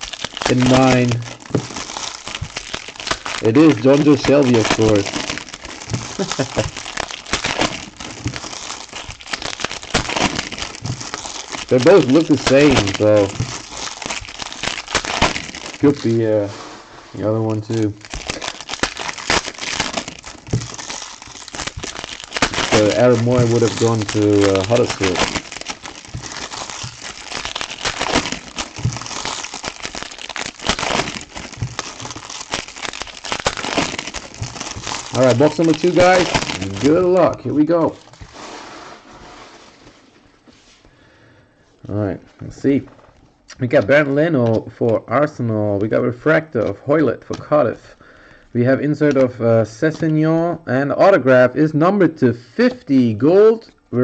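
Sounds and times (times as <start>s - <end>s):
thin plastic crinkling: 0.0s - 40.9s.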